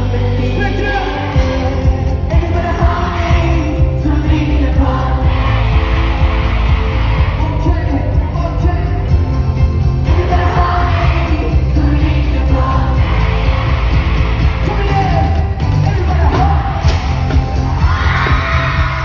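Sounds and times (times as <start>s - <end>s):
person singing: 0.0s - 6.5s, 10.0s - 16.9s
live pop music with bass beat: 0.0s - 19.0s.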